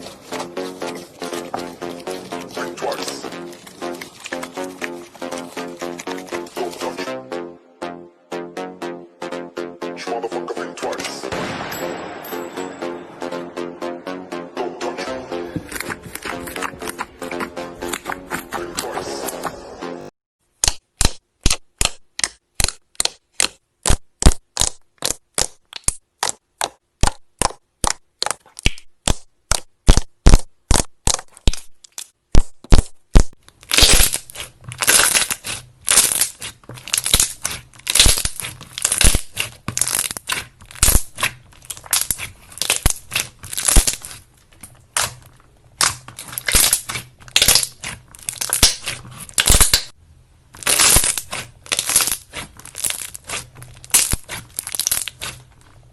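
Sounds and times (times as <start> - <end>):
slime crunching squeezes: 0.0 - 7.0, 20.6 - 49.9, 50.5 - 55.8
slime popping: 20.6 - 49.9, 50.6 - 55.5.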